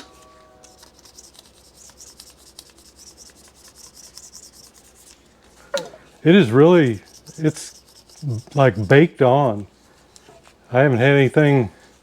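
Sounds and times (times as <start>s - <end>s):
razor blade scraping metal: 0.0s - 5.3s, 6.4s - 9.1s.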